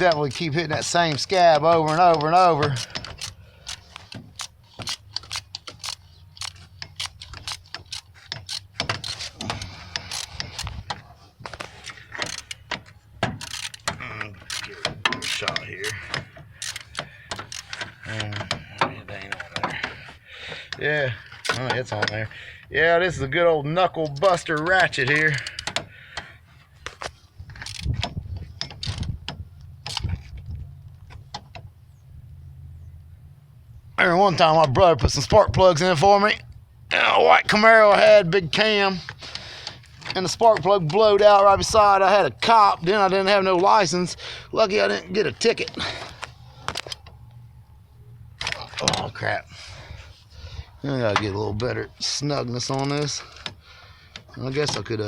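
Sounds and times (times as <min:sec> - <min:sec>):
ratchet wrench clicking and scraping: 0:00.0 - 0:22.4, 0:24.1 - 0:30.4.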